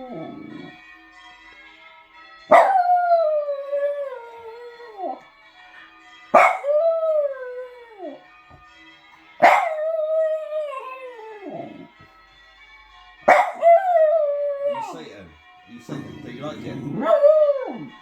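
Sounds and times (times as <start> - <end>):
dog howling: 0.0 - 0.8, 2.5 - 5.2, 6.4 - 8.2, 9.4 - 11.9, 13.3 - 15.1, 16.6 - 18.0.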